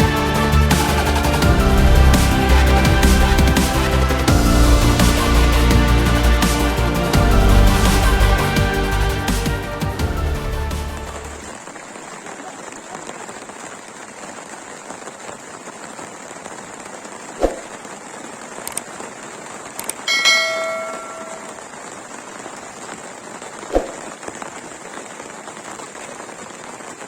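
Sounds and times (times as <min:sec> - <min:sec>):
bell-like metallic ring: 0:20.1 - 0:21.6.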